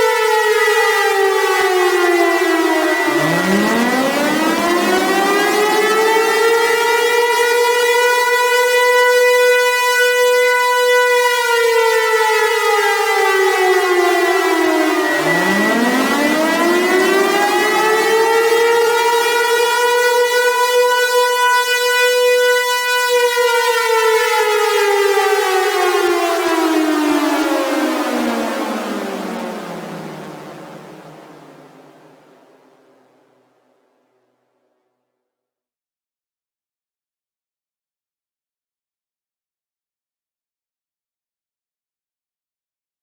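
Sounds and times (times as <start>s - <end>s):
warning siren wailing: 0.0s - 33.2s
steady high tone: 14.8s - 18.3s.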